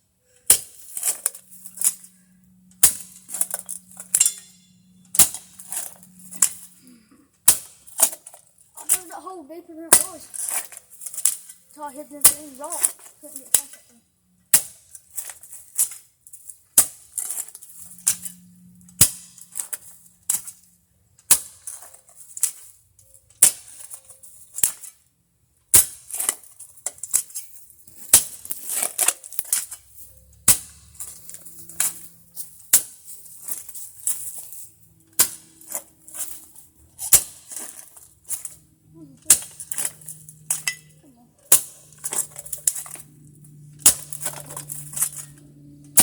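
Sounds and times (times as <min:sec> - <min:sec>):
digging tool striking hard ground: 0:00.4 - 0:02.1, 0:02.8 - 0:06.7, 0:07.4 - 0:09.2, 0:09.9 - 0:11.5, 0:12.2 - 0:13.8, 0:14.5 - 0:16.0, 0:16.7 - 0:18.3, 0:19.0 - 0:20.6, 0:21.2 - 0:21.9, 0:25.7 - 0:26.4, 0:28.0 - 0:29.8, 0:30.4 - 0:34.5, 0:35.1 - 0:46.0.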